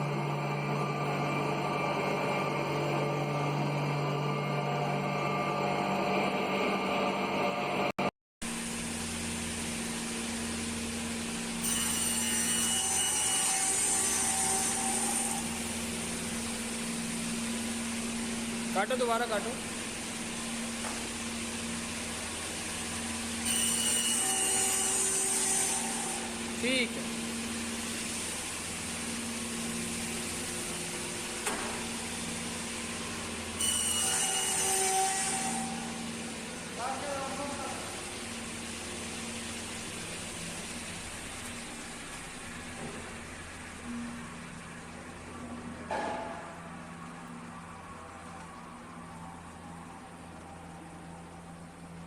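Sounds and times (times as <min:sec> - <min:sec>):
high-pitched machine noise: 0:00.0 - 0:31.4, 0:32.0 - 0:52.0
power saw cutting a board: 0:08.6 - 0:19.7, 0:21.9 - 0:31.2, 0:33.5 - 0:38.2.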